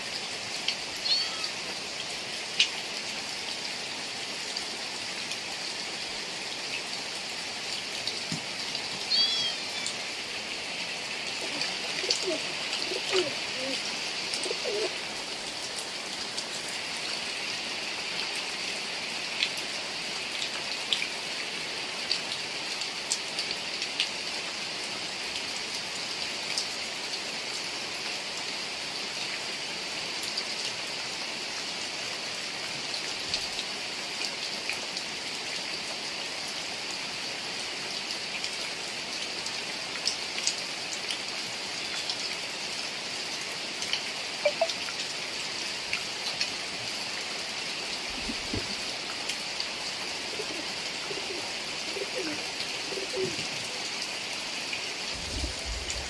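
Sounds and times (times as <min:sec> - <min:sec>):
rain hissing on surfaces: 0:00.0 - 0:56.0
raindrops ticking: 0:43.9 - 0:45.0.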